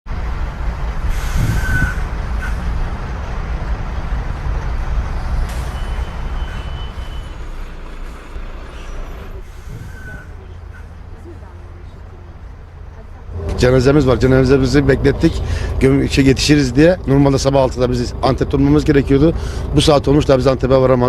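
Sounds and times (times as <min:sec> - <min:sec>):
bus engine rumble: 0:00.0 - 0:21.0
air hiss bursts: 0:01.0 - 0:02.8, 0:05.3 - 0:11.0.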